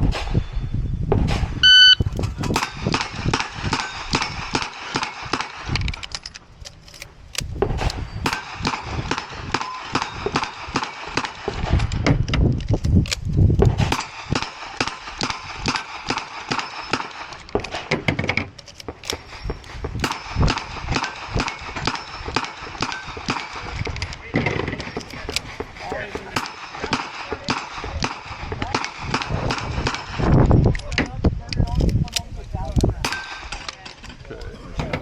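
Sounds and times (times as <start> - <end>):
revolver gunshots: 1.2 - 5.9, 7.6 - 12.2, 13.7 - 30.4, 33.0 - 33.7.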